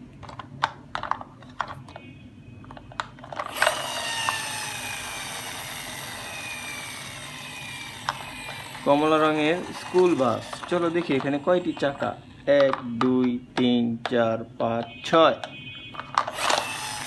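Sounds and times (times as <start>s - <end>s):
toy motor whirring: 3.3s - 12.6s, 16.1s - 17.0s
plastic toy clicks: 6.9s - 14.2s, 16.0s - 17.0s.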